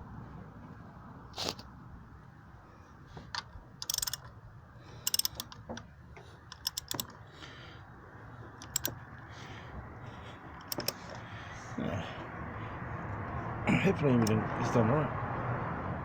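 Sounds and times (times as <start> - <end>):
ratchet wrench clicking: 3.8 - 4.3, 5.0 - 7.2, 8.6 - 9.0, 10.6 - 11.1.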